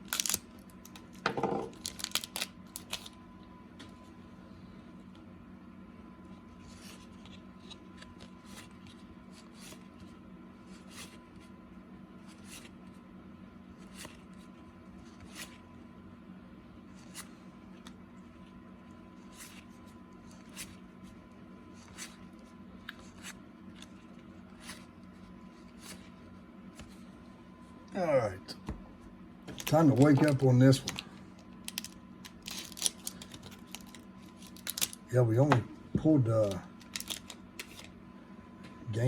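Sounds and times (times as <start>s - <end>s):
trading cards being flipped: 0.0s - 3.2s, 6.6s - 10.1s, 15.0s - 15.6s, 22.8s - 24.9s, 25.6s - 26.1s, 29.5s - 35.0s, 36.3s - 38.0s
faint steady hum: 0.0s - 39.0s.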